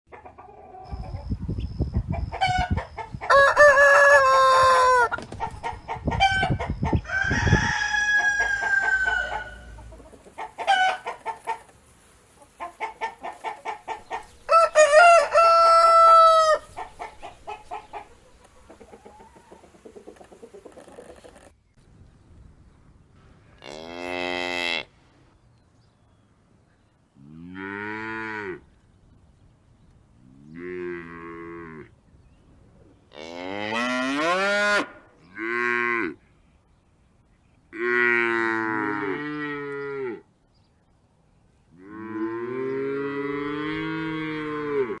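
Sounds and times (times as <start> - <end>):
chickens clucking: 0.1 - 21.5
rooster crowing: 3.3 - 5.2, 6.4 - 10.0, 10.6 - 11.1, 14.1 - 17.3.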